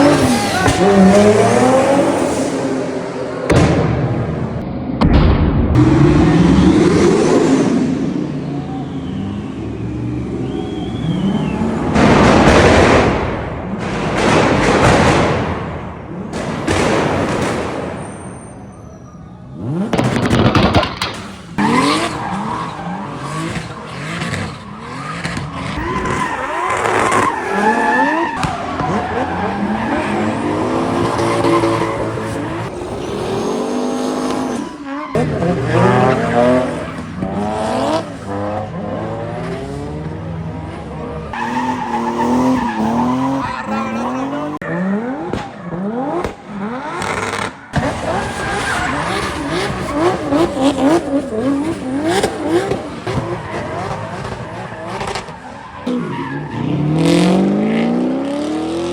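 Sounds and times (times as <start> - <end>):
tyre squeal and skidding: 0.0 - 2.9, 8.3 - 12.0, 16.6 - 57.5
car engines revving high: 0.0 - 58.9.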